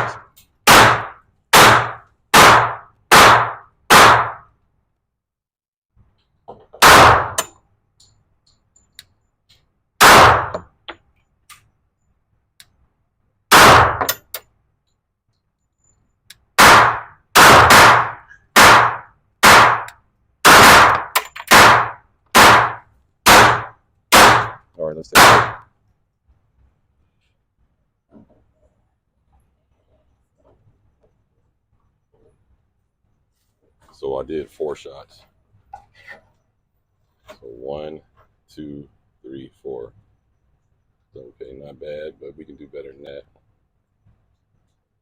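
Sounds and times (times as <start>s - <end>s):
pistol gunshots: 0.0s - 4.5s, 6.8s - 7.5s, 10.0s - 10.7s, 13.5s - 14.2s, 16.6s - 25.6s.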